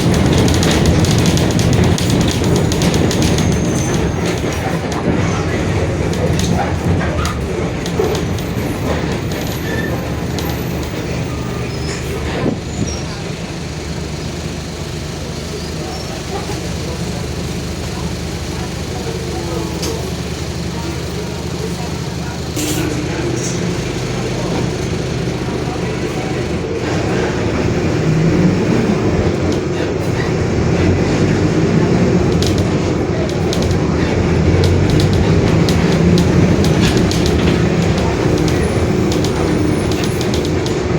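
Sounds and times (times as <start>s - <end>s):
bus engine drone: 0.0s - 40.9s
light clicks and rattles: 32.2s - 40.9s.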